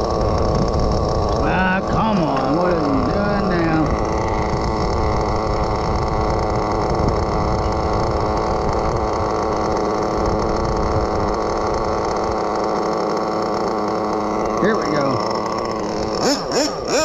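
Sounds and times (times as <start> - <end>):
small nitro engine idling: 0.0 - 17.0.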